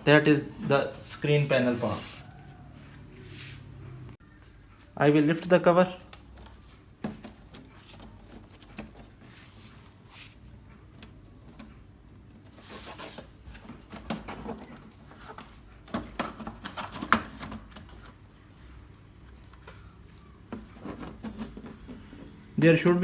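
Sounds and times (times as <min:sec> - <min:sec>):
plastic cover knocks and scraping: 0:06.3 - 0:09.4, 0:12.5 - 0:18.2, 0:20.5 - 0:22.2.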